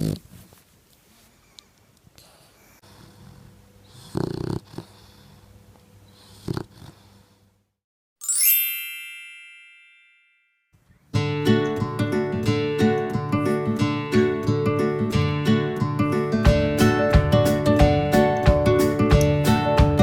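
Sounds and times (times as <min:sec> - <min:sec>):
dog snoring: 0:00.0 - 0:00.3, 0:02.8 - 0:05.5, 0:06.1 - 0:07.4
bright chime ringing: 0:08.2 - 0:10.7
acoustic guitar strumming: 0:11.2 - 0:20.0.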